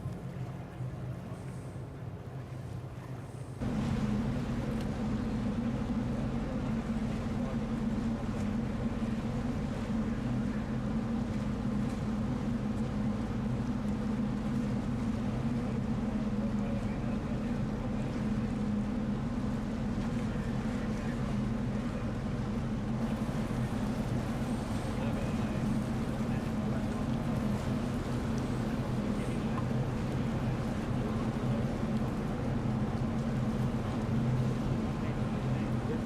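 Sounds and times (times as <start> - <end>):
ship diesel engines droning: 21.2 - 36.0.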